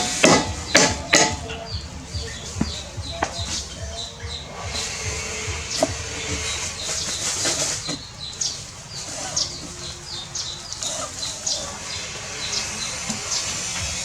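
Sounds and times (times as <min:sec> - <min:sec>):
low noisy background: 0:00.0 - 0:14.0
small birds chirping: 0:00.0 - 0:14.0.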